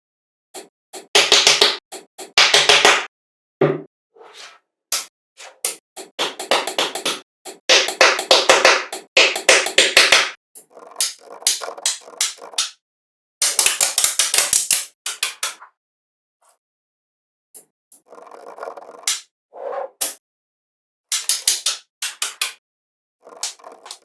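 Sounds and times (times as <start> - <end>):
rapid tapping and knocking: 0.6 - 3.9, 5.7 - 10.4.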